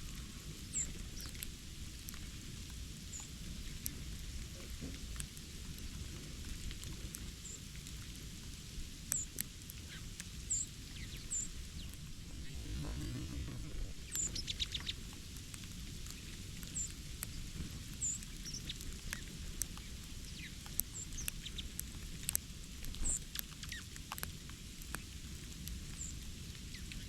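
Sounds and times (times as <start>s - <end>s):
small birds chirping: 0.2s - 1.6s, 9.0s - 24.3s
low steady rumble: 11.0s - 16.6s.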